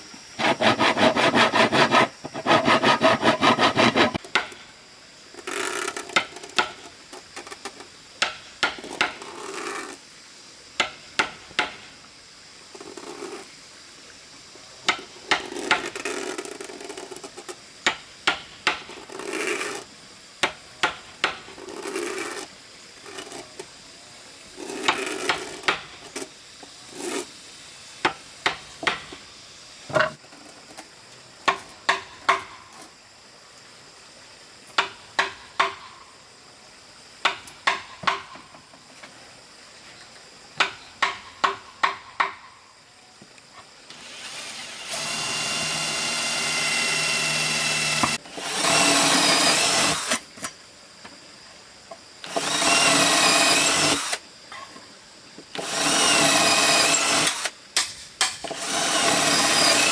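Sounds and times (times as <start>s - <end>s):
sawing or rasping timber: 0.4s - 4.6s, 18.7s - 19.9s, 21.2s - 23.6s, 24.6s - 26.2s, 26.8s - 27.3s, 43.9s - 50.2s, 52.3s - 54.2s, 55.6s - 57.5s, 58.5s - 59.9s
sharp knocks on wood: 10.8s - 11.8s.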